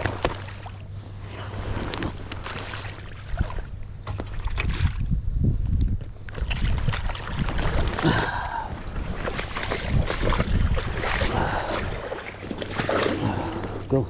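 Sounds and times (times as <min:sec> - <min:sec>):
wind buffeting microphone: 0:03.0 - 0:14.0.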